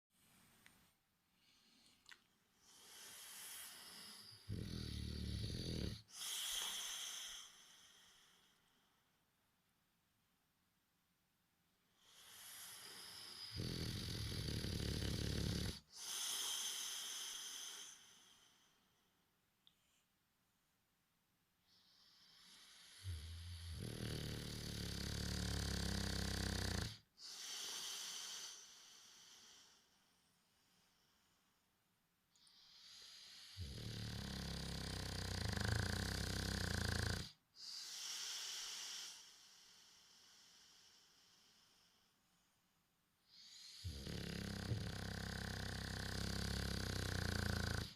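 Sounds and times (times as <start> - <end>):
dog breathing hiss: 2.6 - 8.5, 12.0 - 18.7, 21.7 - 29.9, 34.8 - 42.2
dog snoring: 2.7 - 8.0, 12.0 - 18.3, 21.8 - 29.6, 32.5 - 39.2, 43.3 - 47.9
dog hissing breath: 5.6 - 8.2.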